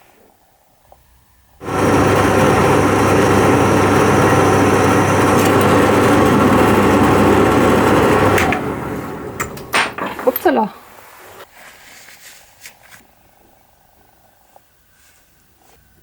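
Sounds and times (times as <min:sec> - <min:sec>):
electric power tool running: 0:01.6 - 0:10.2.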